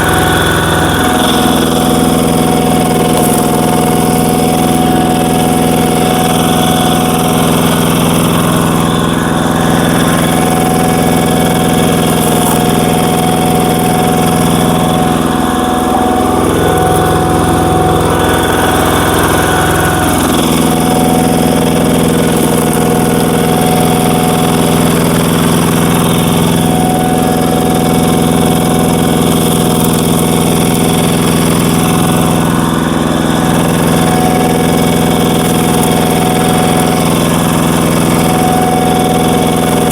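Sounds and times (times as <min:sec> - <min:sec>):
diesel engine running loudly: 0:00.0 - 0:39.9.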